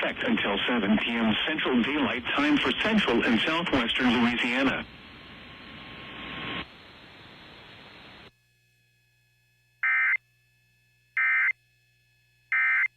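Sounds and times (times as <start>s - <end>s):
static hiss: 0.2s - 8.3s.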